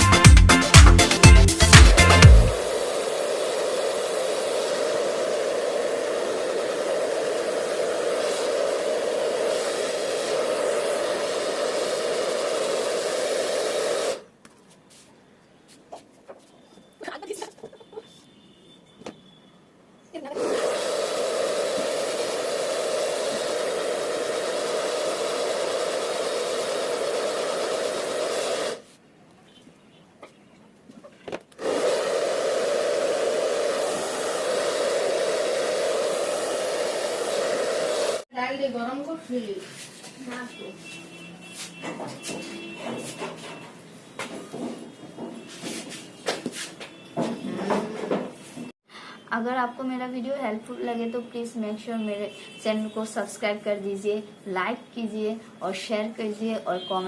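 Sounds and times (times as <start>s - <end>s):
hair dryer blowing: 0.0s - 14.3s, 20.3s - 28.8s, 31.6s - 38.3s.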